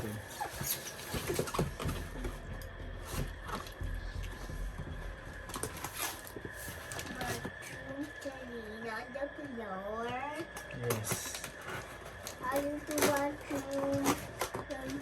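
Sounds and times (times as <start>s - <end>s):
faint high-pitched hum: 0.0s - 15.0s
plastic parts clicking and rustling: 10.6s - 15.0s.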